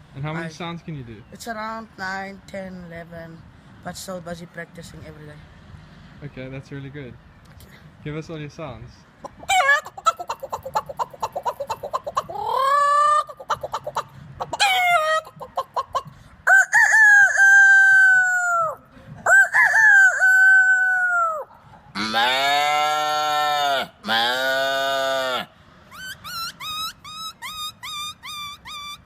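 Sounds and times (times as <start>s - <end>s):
man imitating chicken clucking: 9.2s - 29.0s.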